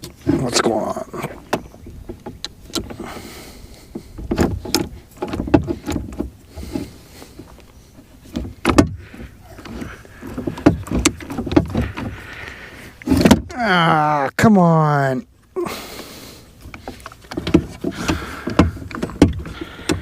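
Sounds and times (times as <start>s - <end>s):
plastic parts clicking and knocking: 8.3s - 9.0s, 9.6s - 12.2s, 13.0s - 13.5s, 16.7s - 20.0s.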